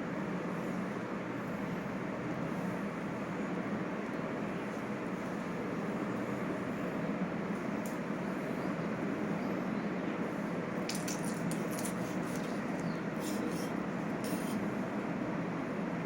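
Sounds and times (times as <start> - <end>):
wet squelching and crackling: 10.8 - 13.7.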